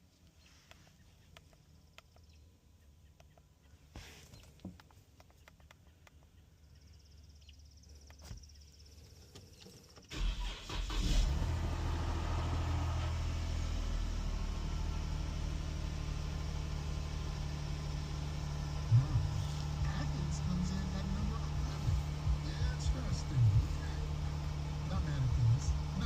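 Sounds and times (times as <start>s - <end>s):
car engine idling: 7.8s - 26.0s
car engine cranking and starting: 9.4s - 26.0s.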